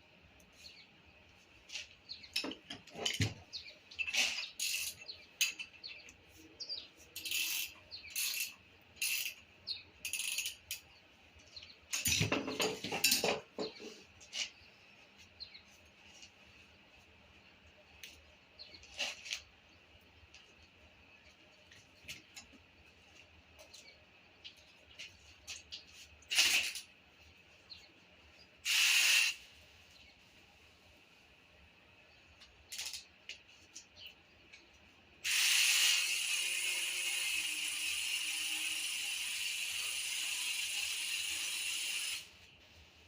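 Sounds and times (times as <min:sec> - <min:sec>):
metal tools clinking and clattering: 0:11.9 - 0:13.9.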